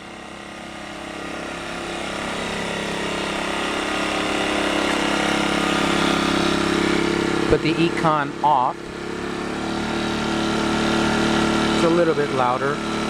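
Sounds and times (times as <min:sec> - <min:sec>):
generator engine humming: 0:00.0 - 0:13.0.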